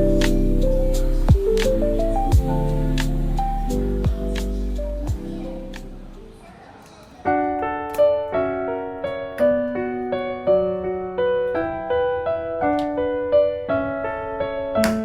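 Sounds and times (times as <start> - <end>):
gentle solo piano melody: 7.3 - 15.0.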